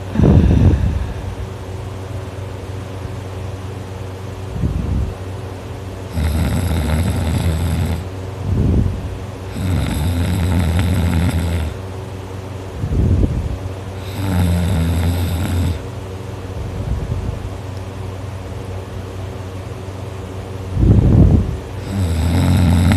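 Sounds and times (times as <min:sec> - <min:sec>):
person snoring loudly: 0:00.0 - 0:01.2, 0:06.1 - 0:08.1, 0:09.5 - 0:11.8, 0:14.0 - 0:15.8, 0:21.8 - 0:22.9
steady low hum: 0:00.0 - 0:22.9.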